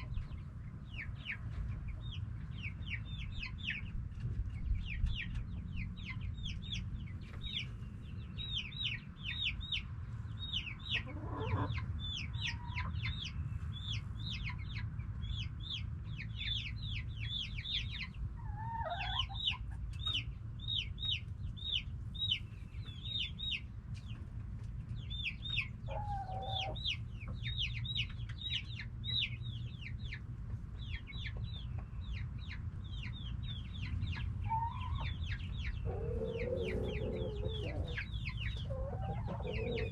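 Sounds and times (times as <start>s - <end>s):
chickens chirping: 0.0s - 39.9s
low steady rumble: 0.0s - 39.9s
lower chicken call: 35.8s - 39.9s.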